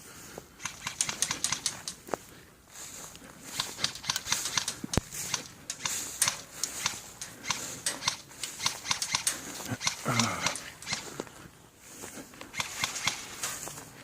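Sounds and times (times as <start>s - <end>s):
airsoft guns popping: 0.6s - 2.1s, 3.5s - 11.2s, 12.5s - 13.4s.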